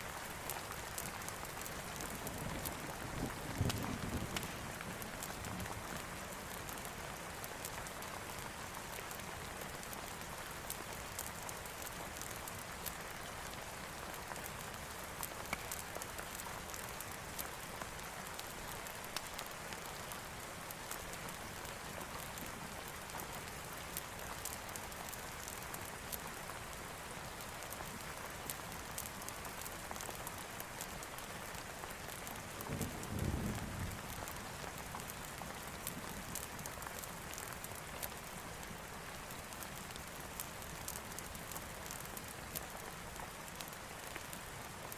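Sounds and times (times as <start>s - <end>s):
heavy rain falling: 0.1s - 44.9s
sharp crackles and clicks: 15.2s - 17.5s, 39.5s - 44.9s.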